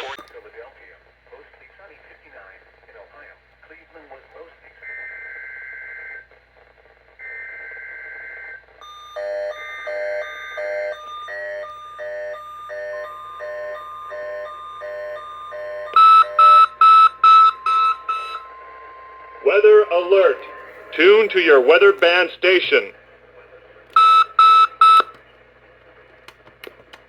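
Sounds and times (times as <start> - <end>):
warbling data header tones: 0.0 - 0.2, 10.8 - 22.9
steady warning tone: 8.8 - 23.0
alert receiver beeping: 9.2 - 22.9, 24.0 - 25.2.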